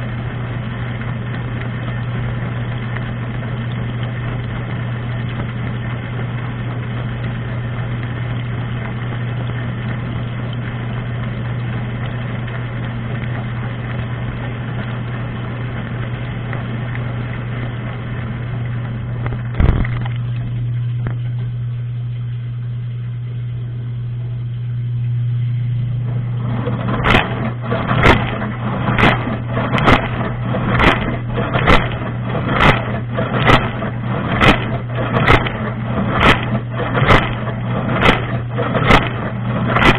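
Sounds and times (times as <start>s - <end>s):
circulation pump motor humming: 0.0s - 39.9s
water spraying: 26.0s - 39.9s.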